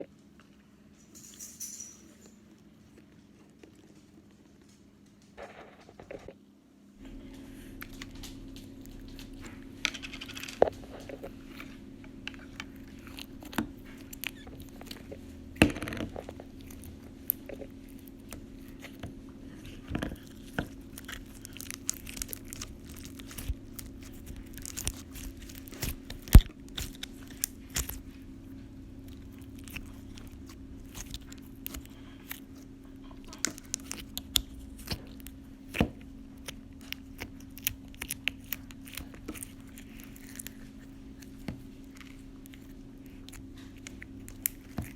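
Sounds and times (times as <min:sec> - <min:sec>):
steady low hum: 0:00.0 - 0:44.9
slime clicking and popping: 0:20.9 - 0:28.1, 0:33.3 - 0:40.5.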